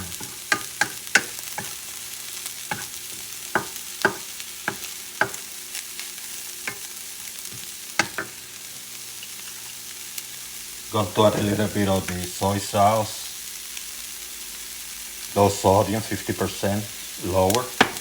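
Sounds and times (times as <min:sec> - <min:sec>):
food sizzling in oil: 0:00.0 - 0:18.0.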